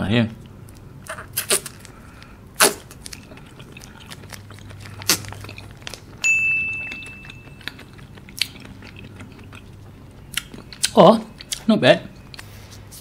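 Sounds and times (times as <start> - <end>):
clear ringing ding: 6.2 - 7.8.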